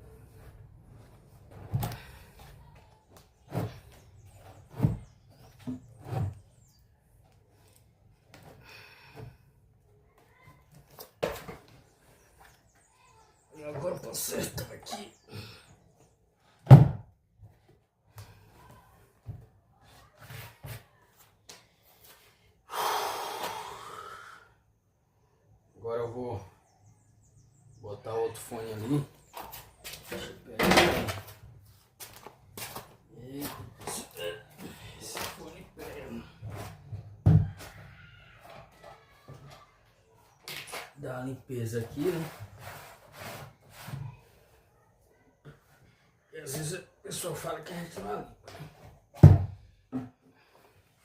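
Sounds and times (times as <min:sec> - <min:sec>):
knocks and thumps on speaker cabinet: 0:16.7 - 0:17.0, 0:49.2 - 0:50.1
breathy exhale: 0:22.7 - 0:24.6.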